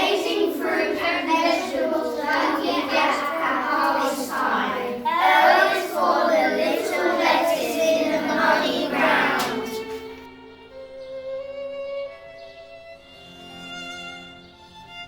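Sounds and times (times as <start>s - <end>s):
children singing together: 0.0s - 10.3s.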